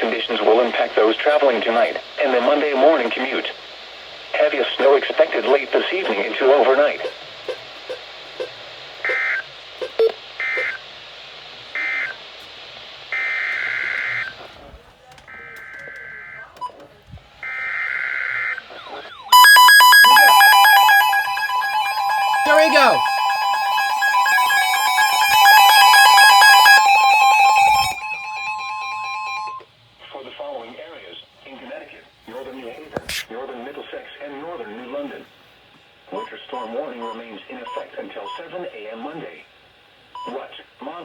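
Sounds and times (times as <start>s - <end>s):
data-burst tones: 19.3s - 29.6s
steady high-pitched alert tone: 19.4s - 29.6s.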